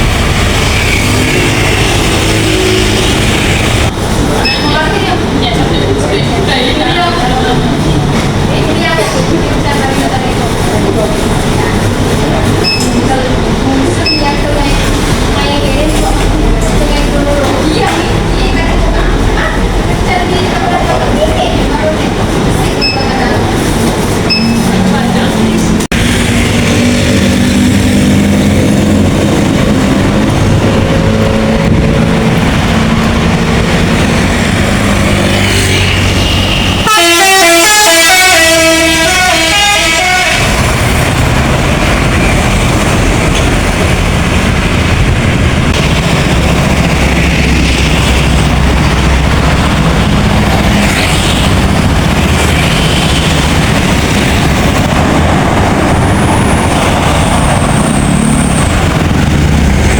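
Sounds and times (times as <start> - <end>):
bus engine rumble: 0.0 - 59.9
road traffic: 0.0 - 59.9
musical air horn tune: 36.8 - 40.6.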